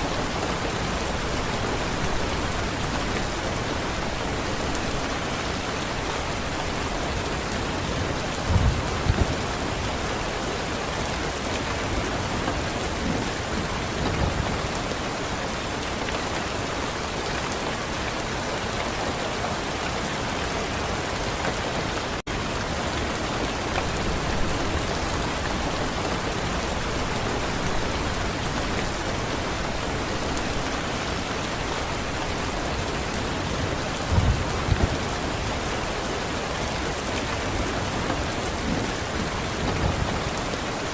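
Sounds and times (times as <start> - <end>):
distant thunder rumbles: 7.8 - 10.1, 23.6 - 35.6.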